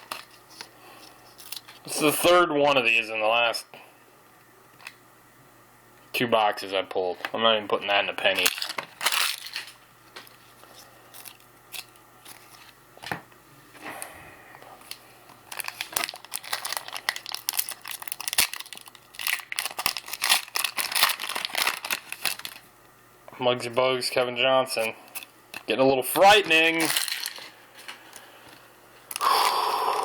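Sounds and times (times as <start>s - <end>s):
wrapper tearing and crinkling: 8.2s - 9.8s, 11.2s - 12.7s, 14.9s - 22.7s, 26.3s - 27.6s.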